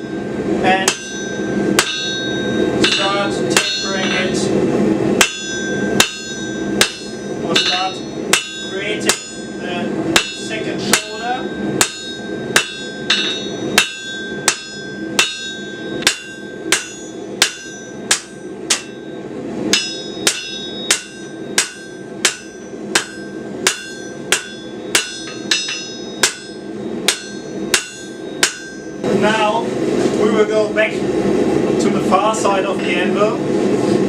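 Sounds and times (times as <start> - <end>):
hammer striking steel on anvil: 0.0 - 4.4, 5.2 - 29.1.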